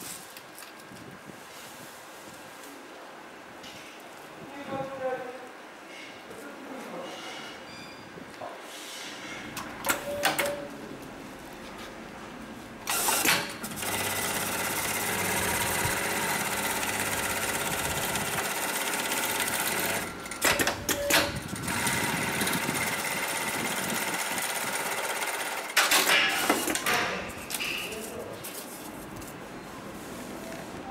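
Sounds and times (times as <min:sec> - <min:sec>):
sewing machine stitching: 0:12.9 - 0:26.9.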